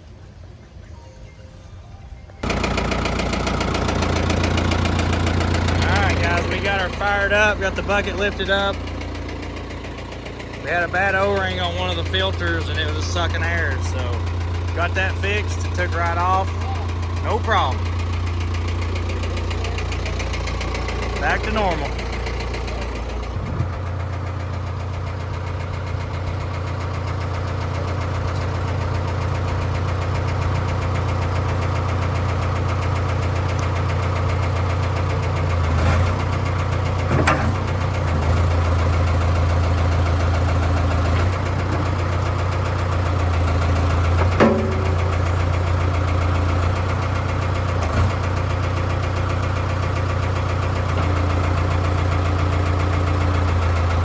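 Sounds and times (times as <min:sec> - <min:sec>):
diesel engine idling: 0:00.0 - 0:54.0
short knocks or clanks: 0:44.0 - 0:45.4.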